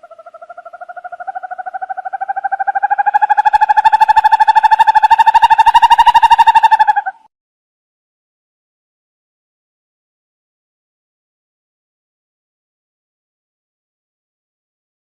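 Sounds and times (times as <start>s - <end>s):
owl trilling: 0.0s - 7.3s.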